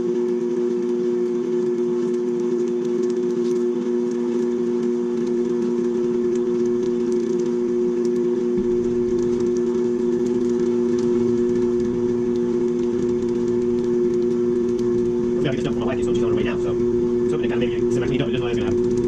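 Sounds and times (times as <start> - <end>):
stand mixer grinding meat: 0.0 - 19.0
low rumble: 8.6 - 19.0.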